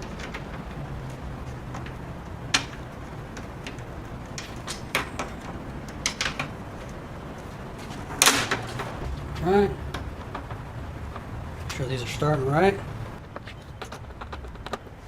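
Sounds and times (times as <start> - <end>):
clicks and knocks of window frame: 0.0 - 7.0, 7.8 - 9.0
steady low hum: 0.0 - 15.0.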